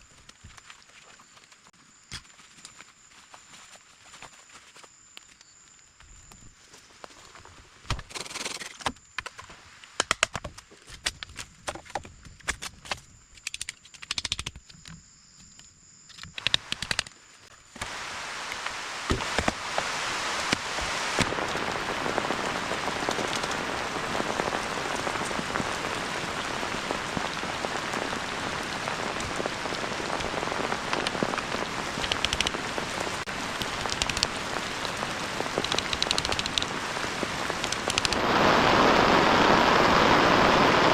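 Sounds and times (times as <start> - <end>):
heavy rain: 17.8 - 40.9.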